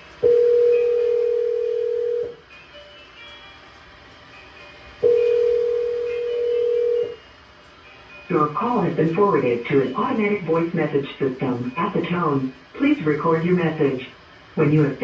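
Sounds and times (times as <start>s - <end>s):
telephone ringback tone: 0.2s - 2.4s, 5.0s - 7.2s.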